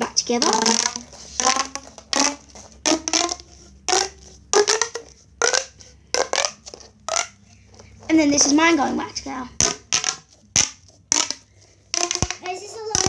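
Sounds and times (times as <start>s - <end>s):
plastic pop tube popping: 0.0s - 8.5s, 9.6s - 13.0s.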